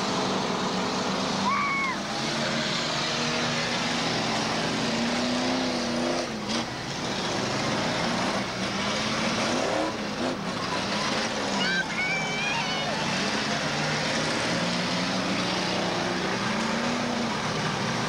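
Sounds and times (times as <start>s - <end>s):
car engines revving together: 0.0s - 18.0s.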